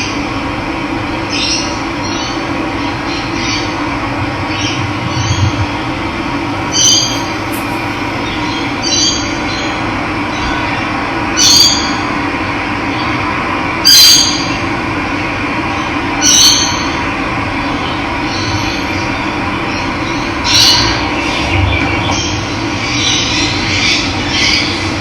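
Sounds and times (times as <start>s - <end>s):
bird calling short high notes: 6.6s - 9.1s.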